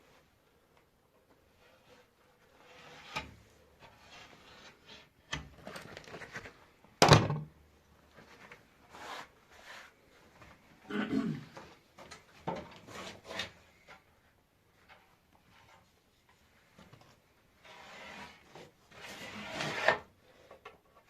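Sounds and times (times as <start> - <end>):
knocks and rustling handling: 5.3 - 8.9, 11.5 - 17.4.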